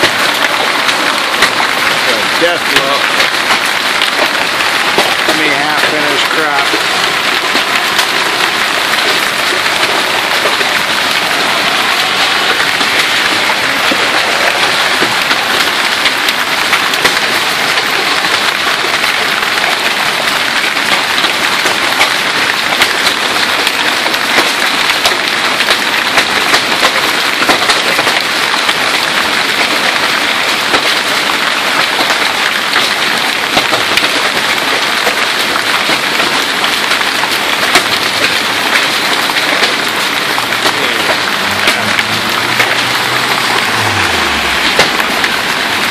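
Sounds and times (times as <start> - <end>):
hail and rain hissing: 0.0 - 45.9
hailstones clicking on hard surfaces: 0.0 - 45.9.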